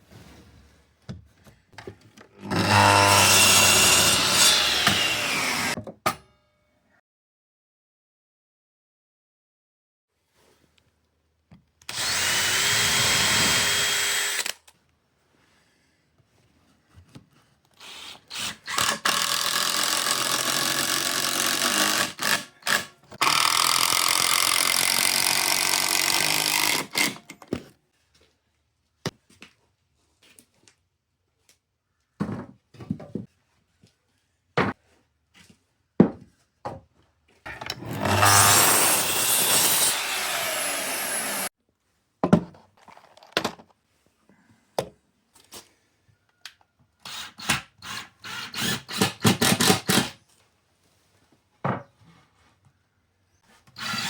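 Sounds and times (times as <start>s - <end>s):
power tools cutting wood: 2.4s - 5.8s, 11.9s - 14.6s, 17.8s - 27.4s, 37.5s - 41.5s, 47.0s - 50.2s, 53.7s - 54.0s.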